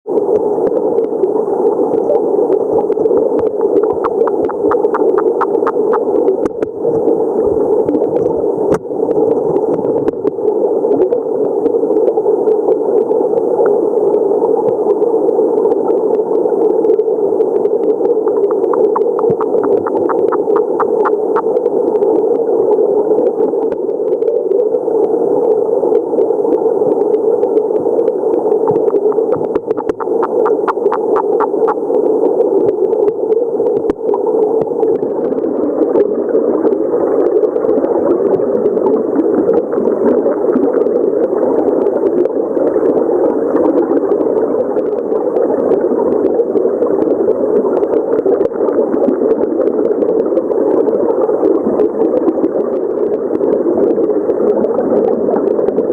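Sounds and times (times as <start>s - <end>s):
frog calling: 3.9s - 6.0s, 18.5s - 21.1s, 28.8s - 31.8s.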